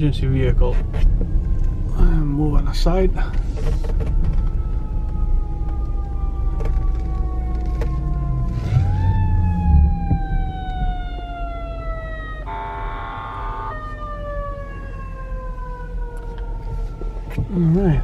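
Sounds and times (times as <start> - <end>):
emergency vehicle siren wailing: 0.0 - 18.0
vehicle engine and tyres rumbling: 0.0 - 18.0
horn blast: 12.4 - 13.8.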